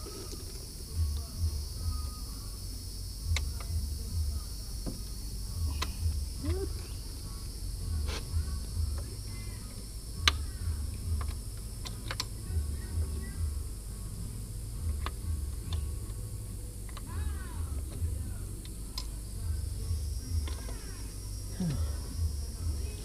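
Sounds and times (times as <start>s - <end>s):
steady high-pitched hiss: 0.0s - 23.0s.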